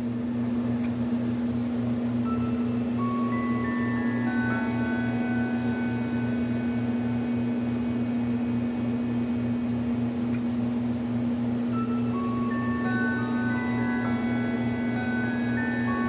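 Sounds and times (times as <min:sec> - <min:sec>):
low electrical hum: 0:00.0 - 0:16.0
clock chime melody: 0:02.2 - 0:08.0, 0:11.7 - 0:16.0.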